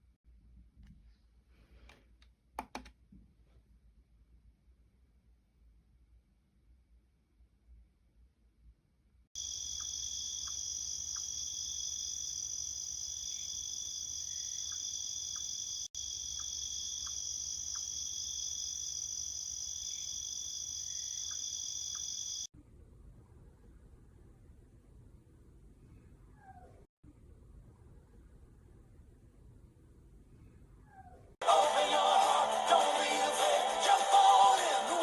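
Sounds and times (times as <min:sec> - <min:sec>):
crickets chirring from a speaker: 0:09.4 - 0:22.5.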